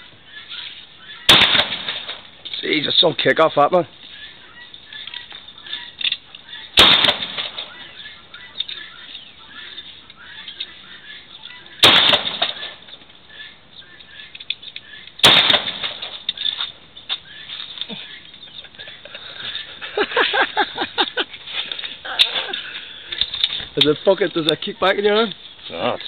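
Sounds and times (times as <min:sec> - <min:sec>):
handgun shots with echo: 0:01.3 - 0:02.2, 0:06.8 - 0:07.7, 0:11.8 - 0:12.8, 0:15.2 - 0:16.1.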